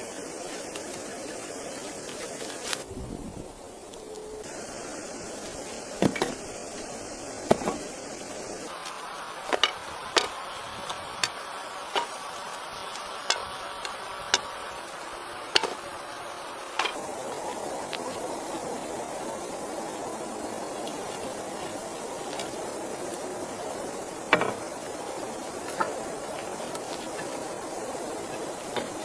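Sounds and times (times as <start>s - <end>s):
background hiss: 0.0s - 29.0s
hand tool knocking on wood: 15.6s - 15.8s.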